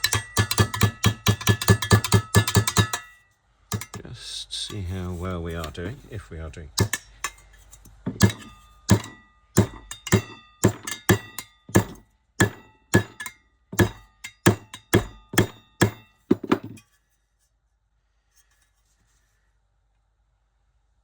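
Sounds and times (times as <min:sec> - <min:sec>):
hammer striking metal fan cover: 0:00.0 - 0:04.0, 0:06.8 - 0:16.8.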